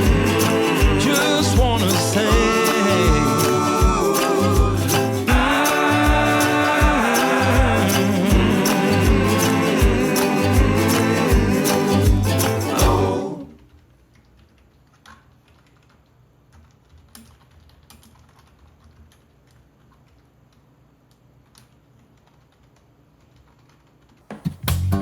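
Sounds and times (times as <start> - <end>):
song playing: 0.0 - 13.4.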